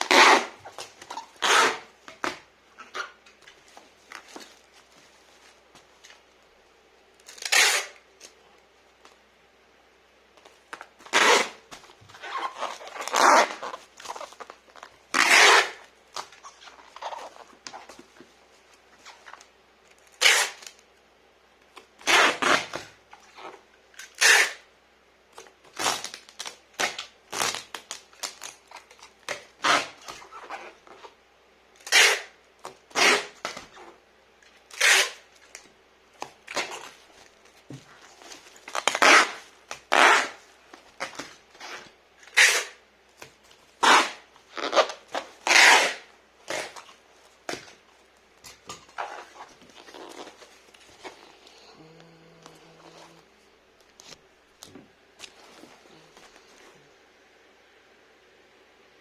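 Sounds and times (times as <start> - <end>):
packing material rustling and tearing: 10.5 - 18.3, 31.8 - 56.8.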